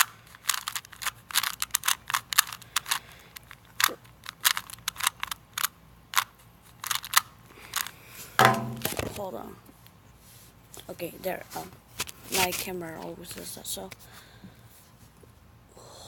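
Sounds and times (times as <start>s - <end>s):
puzzle cube plastic clicks: 0.0s - 8.0s.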